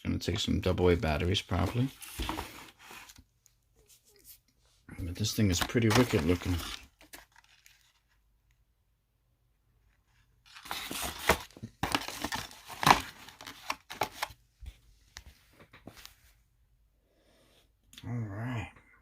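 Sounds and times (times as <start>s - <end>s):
plastic and cardboard rustling: 0.3s - 3.2s, 5.2s - 8.2s, 10.1s - 16.2s.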